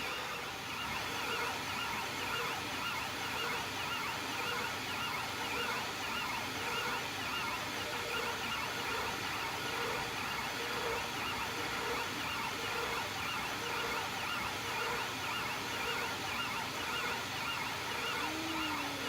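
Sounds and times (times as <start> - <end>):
stepper motors whining: 0.0 - 19.0.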